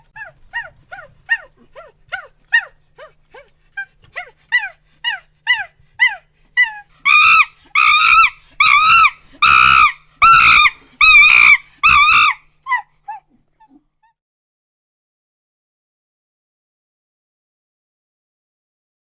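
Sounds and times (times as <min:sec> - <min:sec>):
monkey hooting and screaming: 0:00.0 - 0:13.2.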